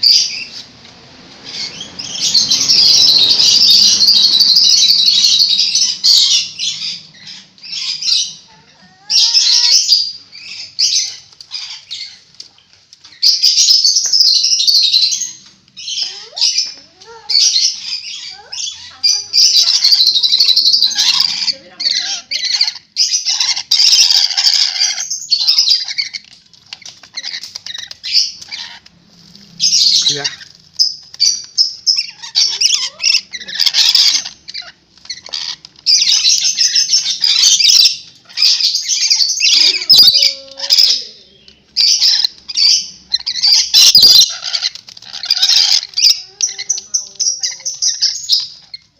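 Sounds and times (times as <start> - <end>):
thin rising chirps: 1.4 - 11.2
parrot screeching: 1.4 - 12.3, 13.1 - 29.0, 29.6 - 48.9.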